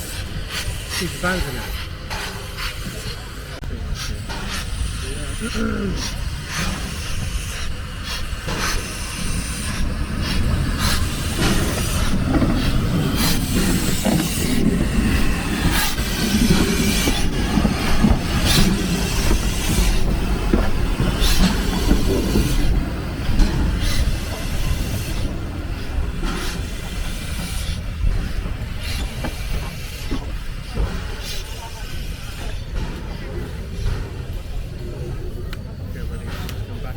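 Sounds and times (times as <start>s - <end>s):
train rumbling on rails: 0.0s - 36.9s
wheels clacking and knocking: 0.0s - 36.9s.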